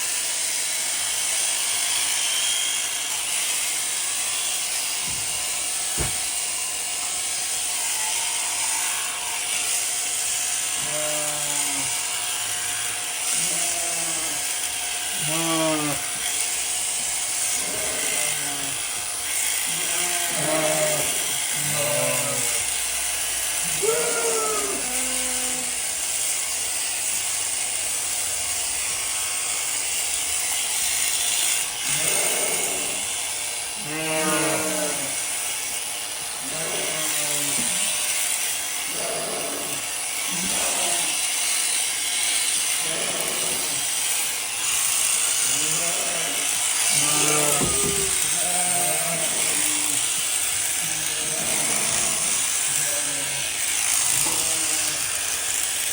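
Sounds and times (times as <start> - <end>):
electric sheep shears running: 0.0 - 55.9
sheep bleating: 7.7 - 9.6, 10.6 - 16.5, 17.4 - 22.8, 23.5 - 25.8, 31.8 - 35.4, 36.3 - 55.5.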